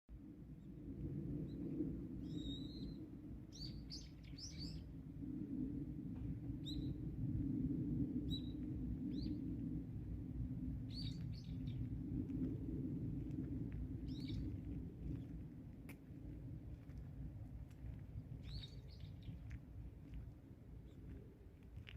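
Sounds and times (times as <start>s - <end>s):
steady low rumble: 0.1s - 21.9s
small birds chirping: 2.2s - 4.9s, 6.6s - 7.0s, 10.9s - 11.9s, 14.1s - 15.3s, 18.4s - 19.6s.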